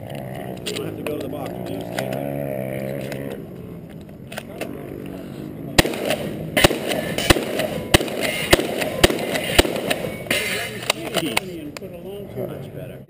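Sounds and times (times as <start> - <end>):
shotgun shots: 5.8 - 11.4.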